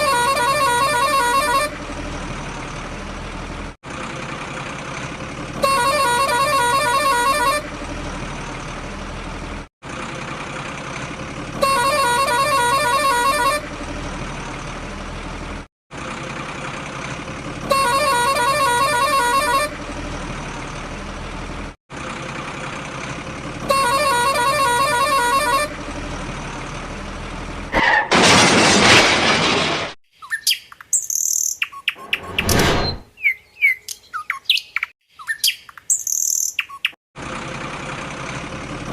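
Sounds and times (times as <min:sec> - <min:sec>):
truck horn honk: 0:00.0 - 0:02.0, 0:05.4 - 0:08.1, 0:11.5 - 0:14.2, 0:17.5 - 0:20.1, 0:23.5 - 0:26.2
truck engine rumble: 0:00.0 - 0:30.0, 0:37.2 - 0:38.9
loud rushing burst: 0:28.0 - 0:30.0
birds chirping: 0:30.1 - 0:37.0.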